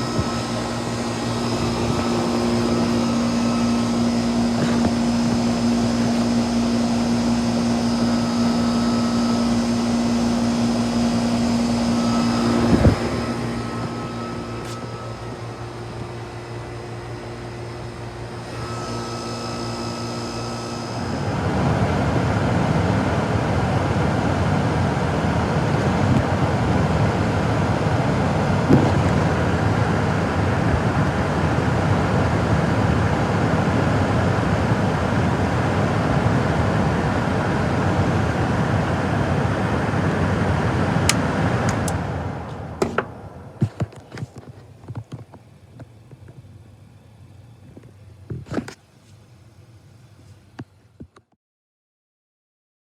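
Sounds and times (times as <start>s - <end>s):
air conditioner motor hum: 0.0s - 51.0s.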